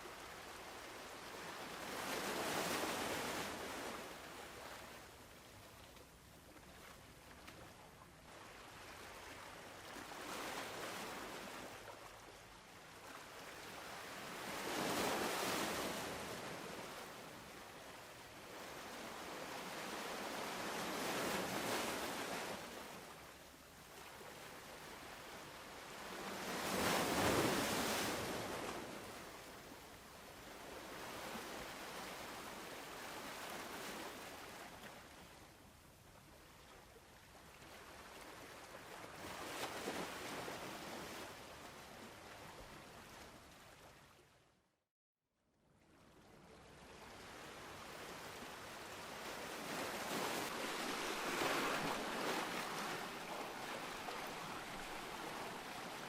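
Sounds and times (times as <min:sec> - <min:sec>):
waves washing in: 0:26.1 - 0:29.4, 0:47.0 - 0:56.0.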